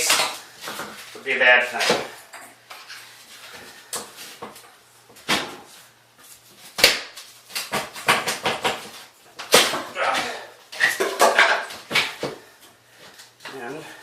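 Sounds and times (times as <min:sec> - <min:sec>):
knocks on wooden cabinet: 0:07.7 - 0:08.8.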